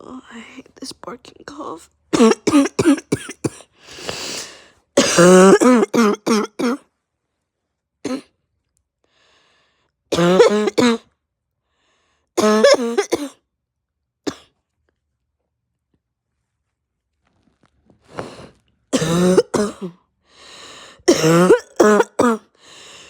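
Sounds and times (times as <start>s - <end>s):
person coughing harshly: 2.1s - 4.4s, 5.0s - 6.8s, 8.1s - 8.3s, 10.1s - 11.0s, 12.4s - 13.4s, 14.3s - 14.5s, 19.0s - 20.0s, 21.0s - 22.5s
gasping breath in: 3.8s - 4.8s, 20.2s - 21.0s, 22.6s - 23.0s.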